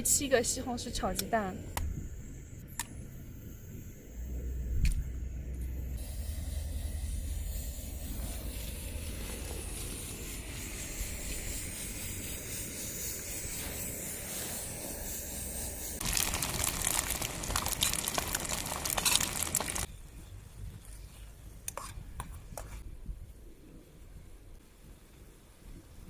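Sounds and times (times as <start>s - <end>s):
camping stove hissing: 5.8s - 19.9s
food sizzling in a pan: 12.9s - 19.9s.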